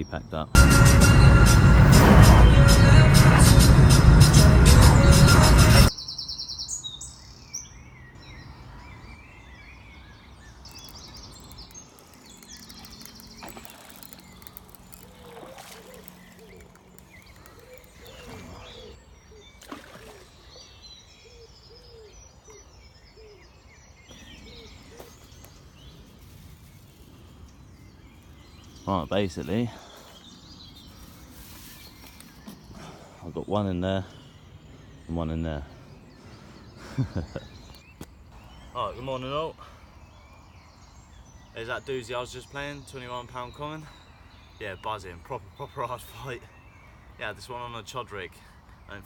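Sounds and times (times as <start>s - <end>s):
background music: 0.6s - 5.9s
birds chirping and calling: 4.3s - 49.0s
short low bird calls: 10.1s - 26.0s.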